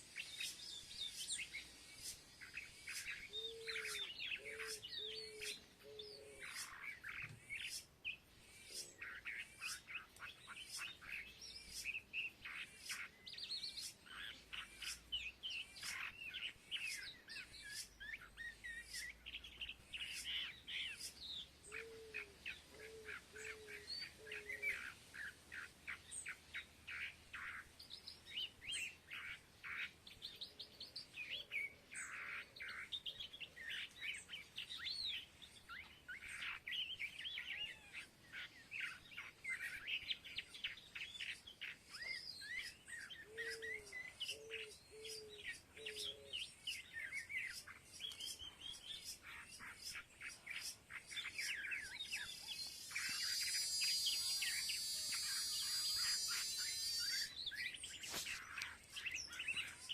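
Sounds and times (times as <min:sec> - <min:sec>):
small birds chirping: 0:00.0 - 0:59.9
low bird call: 0:02.9 - 0:07.1, 0:50.6 - 0:59.9.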